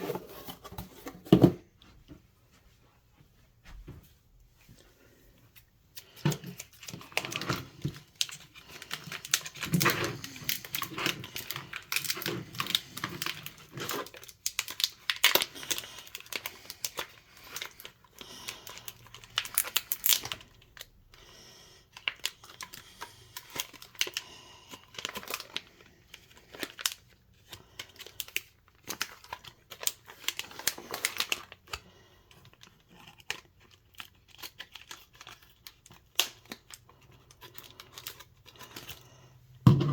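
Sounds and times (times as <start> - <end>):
packaging crinkling and rustling: 5.9 - 21.0, 21.9 - 39.9
packaging tearing: 6.4 - 20.9, 32.6 - 39.1.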